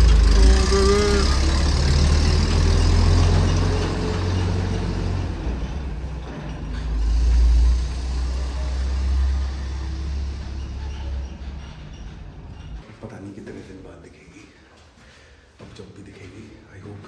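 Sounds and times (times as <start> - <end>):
truck engine pulling away: 0.0 - 12.8.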